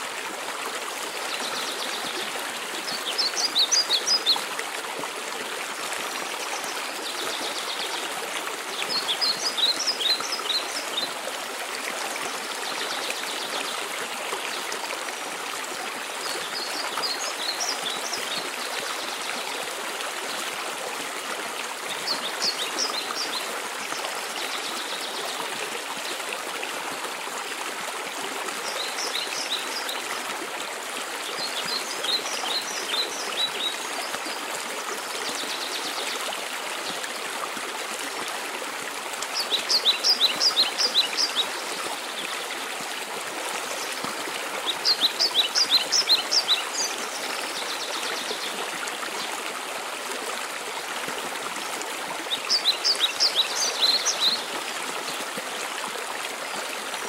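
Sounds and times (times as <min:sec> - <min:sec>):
waterfall rushing: 0:37.5 - 0:49.8
songbird singing: 0:39.3 - 0:42.7, 0:44.7 - 0:48.6, 0:52.3 - 0:54.6.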